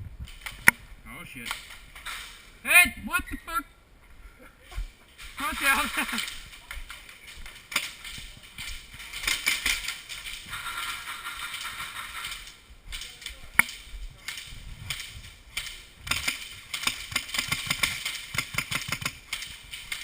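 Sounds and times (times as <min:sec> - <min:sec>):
airsoft guns firing: 0:07.5 - 0:20.0.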